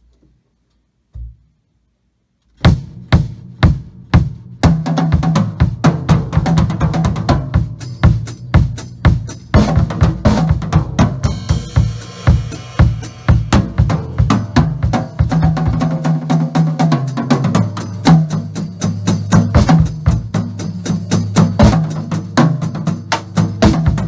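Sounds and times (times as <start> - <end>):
drum kit solo: 2.6 - 24.0
cymbal crash: 11.2 - 15.4.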